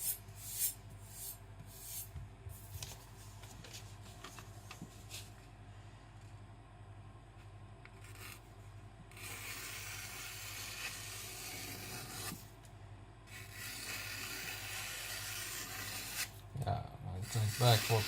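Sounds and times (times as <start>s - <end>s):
knife rubbing on whetstone: 9.2s - 12.4s, 13.3s - 16.3s, 17.2s - 18.0s.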